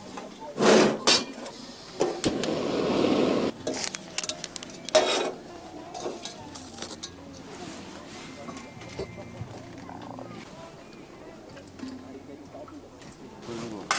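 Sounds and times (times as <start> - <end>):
steady hiss: 0.6 - 3.6.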